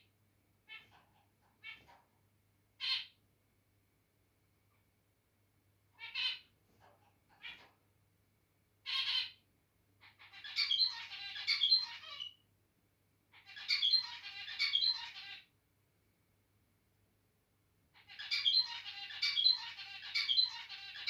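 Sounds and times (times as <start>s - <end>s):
finch singing buzzy song: 10.1s - 12.4s, 13.4s - 15.5s, 18.0s - 21.0s.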